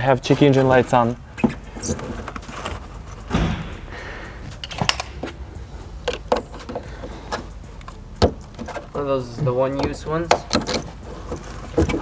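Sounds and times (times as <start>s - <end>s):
car parts clicking and knocking: 0.0s - 12.0s
soft thump: 3.3s - 4.0s.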